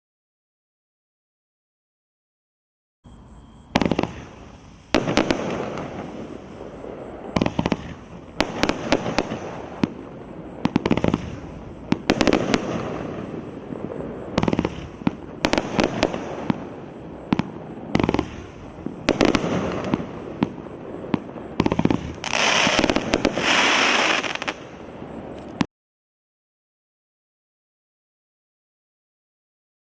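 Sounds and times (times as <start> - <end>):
crackling hiss of fireworks: 3.1 - 25.7
fireworks launch reports: 3.6 - 25.7.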